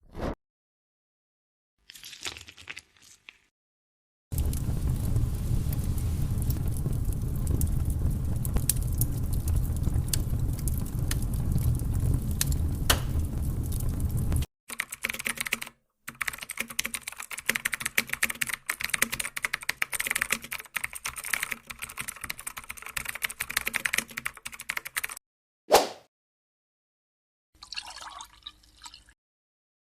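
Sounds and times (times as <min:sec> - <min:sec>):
low rumble with clicks: 0:04.4 - 0:14.5
rapid keyboard typing: 0:14.7 - 0:25.2.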